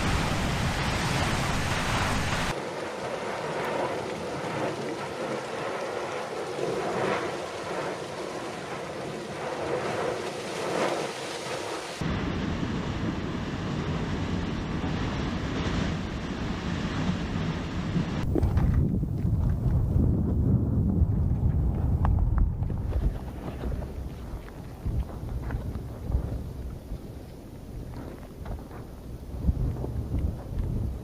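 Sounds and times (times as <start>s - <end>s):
wind on microphone: 6.8s - 31.0s.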